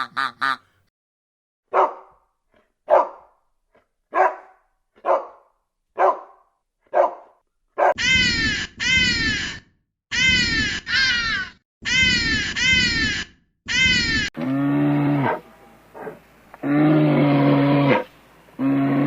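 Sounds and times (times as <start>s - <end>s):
dog barking: 1.7s - 2.3s, 2.9s - 3.4s, 4.1s - 8.0s, 15.2s - 16.2s.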